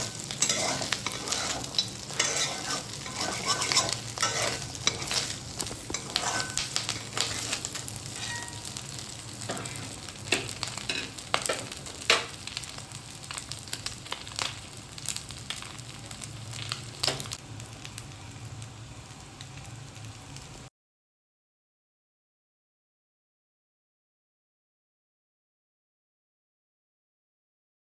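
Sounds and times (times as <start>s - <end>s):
stirring in a pan: 0.0s - 12.7s
chicken sizzling in oil: 0.0s - 20.7s.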